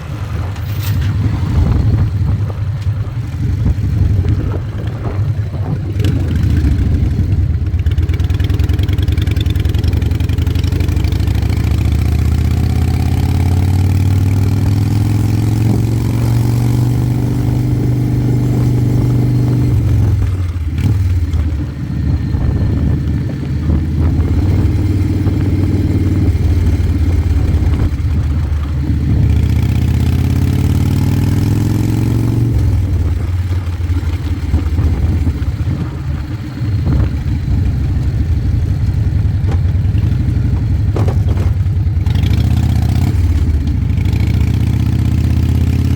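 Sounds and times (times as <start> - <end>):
motorcycle engine accelerating: 0.0 - 45.9.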